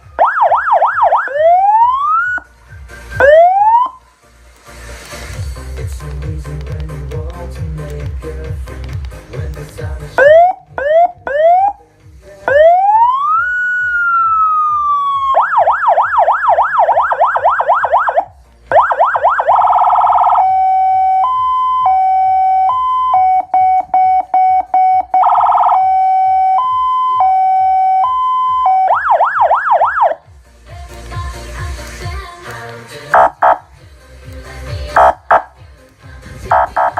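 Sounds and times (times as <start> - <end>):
electronic emergency siren: 0.0 - 2.5, 3.2 - 4.0, 10.2 - 11.8, 12.5 - 30.2, 33.1 - 33.6, 35.0 - 35.6, 36.5 - 36.9
low rhythmic beat: 0.0 - 36.9.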